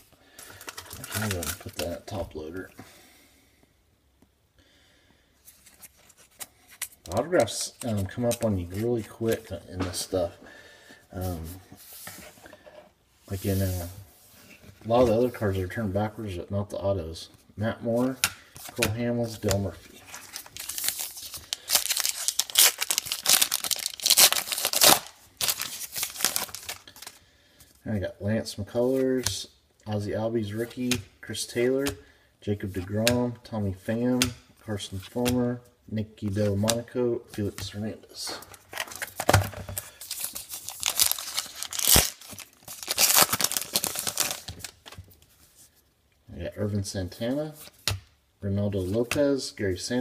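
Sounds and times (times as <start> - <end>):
wrapper tearing and crinkling: 20.0 - 27.2, 38.8 - 44.8.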